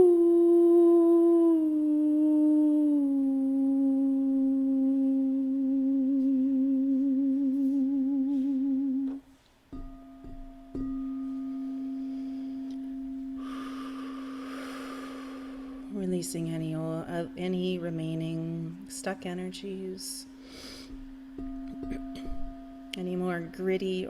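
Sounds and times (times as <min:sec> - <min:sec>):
woman humming long note: 0:00.0 - 0:09.3, 0:10.3 - 0:17.0, 0:20.5 - 0:24.0
steady ringing tone: 0:09.7 - 0:16.1, 0:20.2 - 0:24.0.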